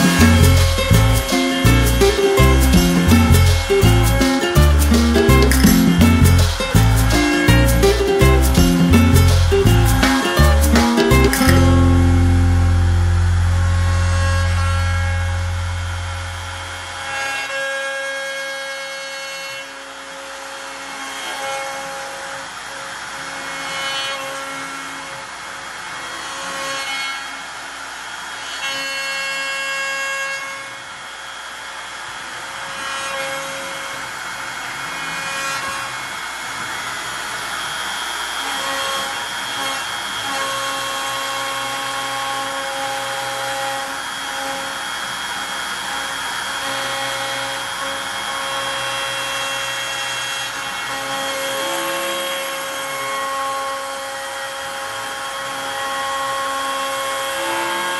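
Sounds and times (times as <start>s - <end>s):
machine tones changing pitch: 0.0s - 17.4s
router bit cutting wood: 0.0s - 57.9s.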